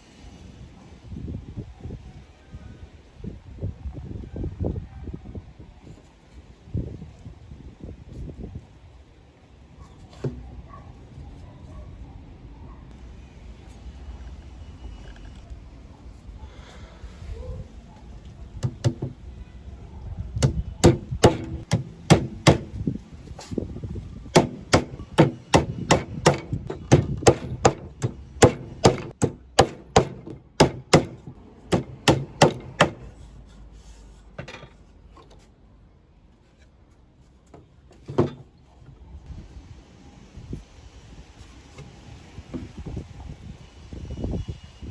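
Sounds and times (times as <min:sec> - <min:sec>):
hammer striking wood: 0:18.6 - 0:19.2, 0:20.4 - 0:22.9, 0:24.3 - 0:33.2.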